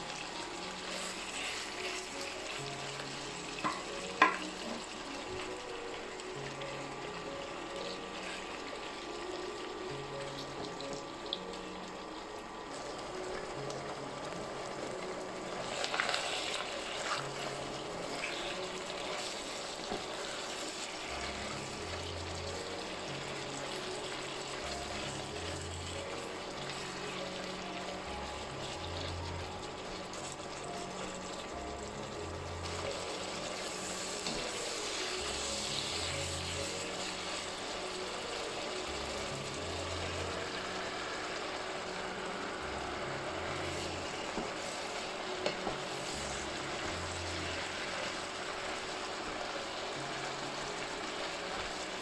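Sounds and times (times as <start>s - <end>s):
kitchen work hiss: 0.0s - 52.0s
quiet music with slow bass: 0.0s - 52.0s.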